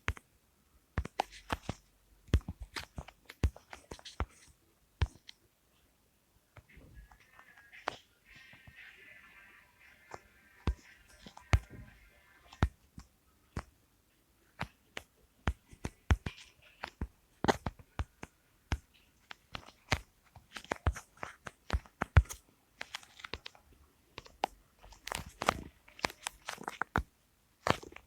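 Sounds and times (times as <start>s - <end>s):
sharp clicks and crunchy snaps: 24.2s - 28.0s.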